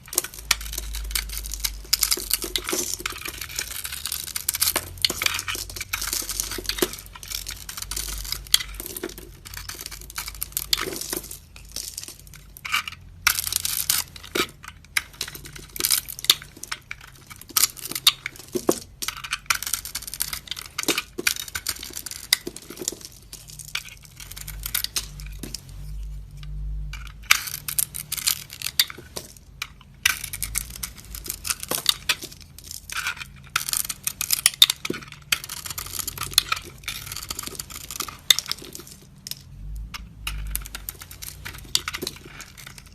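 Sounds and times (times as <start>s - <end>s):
knife scraping bar soap: 0.6s - 11.2s, 35.0s - 38.1s.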